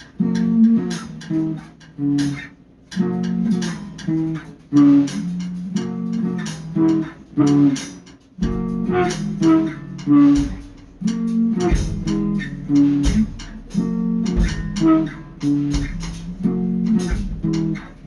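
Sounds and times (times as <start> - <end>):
guitar-led background music: 0.0 - 18.0
bass line: 8.4 - 18.0.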